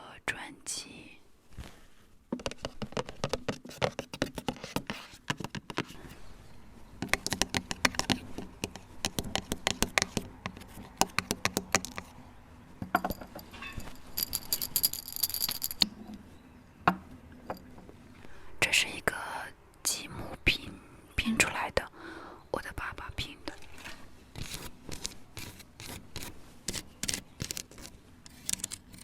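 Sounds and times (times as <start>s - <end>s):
fingers tapping hard objects: 2.4s - 5.9s, 7.0s - 12.1s.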